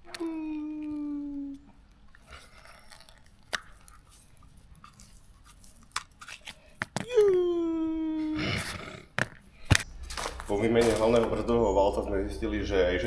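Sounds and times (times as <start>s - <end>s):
loud held tone: 9.8s - 13.0s.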